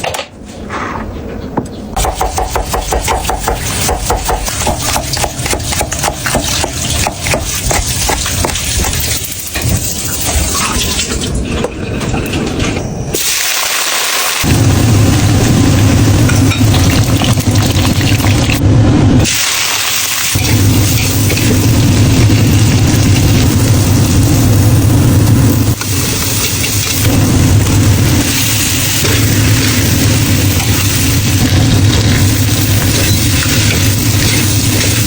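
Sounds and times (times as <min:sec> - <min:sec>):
frying hiss: 0:13.2 - 0:18.6, 0:19.2 - 0:35.0
low hum: 0:14.5 - 0:19.3.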